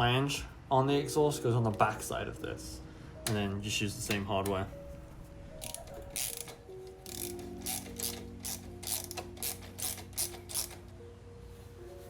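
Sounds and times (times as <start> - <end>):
socket ratchet clicking: 5.6 - 11.0.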